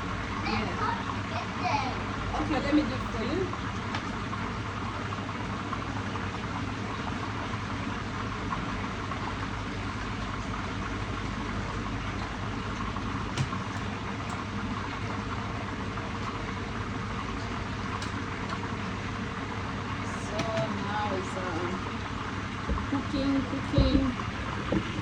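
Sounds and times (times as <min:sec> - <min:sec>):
fish frying in hot oil: 0:00.0 - 0:25.0.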